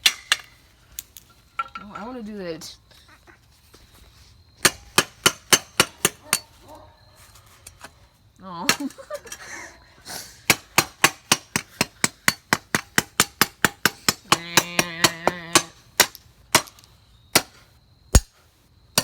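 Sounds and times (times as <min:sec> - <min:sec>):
hard hammer blows: 0:18.2 - 0:18.4.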